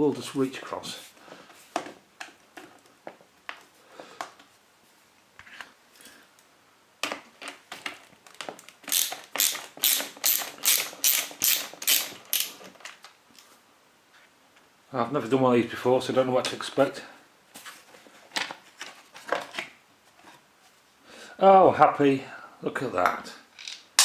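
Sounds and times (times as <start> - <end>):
ratchet driver clicking: 8.9 - 12.6.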